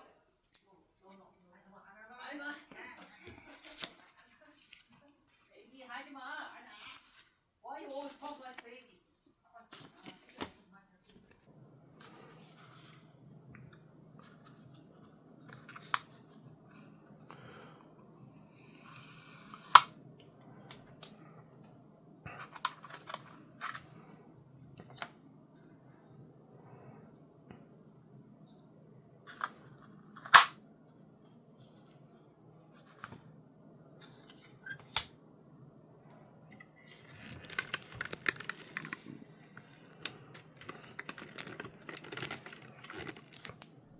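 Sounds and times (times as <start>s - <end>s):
packaging crinkling and rustling: 36.8s - 43.9s.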